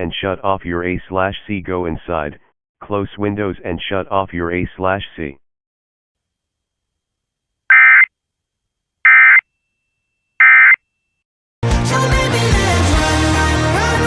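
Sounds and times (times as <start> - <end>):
loud music: 11.6 - 14.0.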